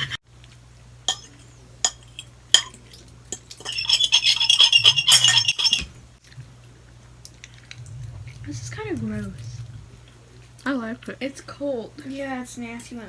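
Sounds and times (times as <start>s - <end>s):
utensil clinking against dish: 1.1s - 5.9s.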